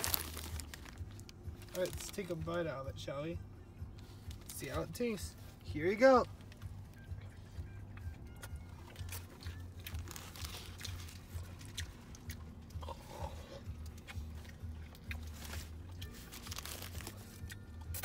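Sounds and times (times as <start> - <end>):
low steady hum: 0.0 - 18.0
person chewing food: 7.8 - 18.0.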